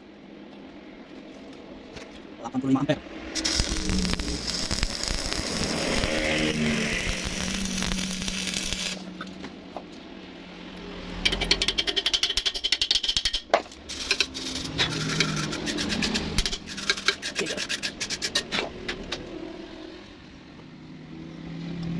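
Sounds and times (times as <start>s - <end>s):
welding arc crackling: 3.3s - 9.2s.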